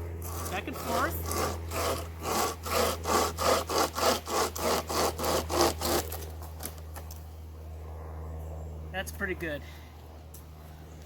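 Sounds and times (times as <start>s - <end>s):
hand chainsaw cutting branch: 0.0s - 7.2s.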